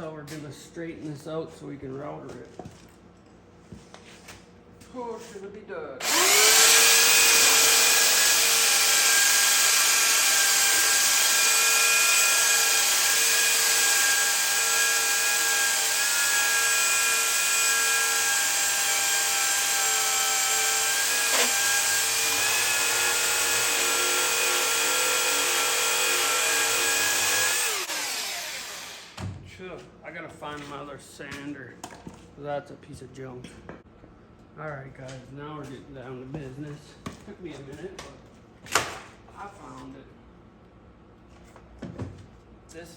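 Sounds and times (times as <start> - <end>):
electric sander whine: 20.1 - 29.1.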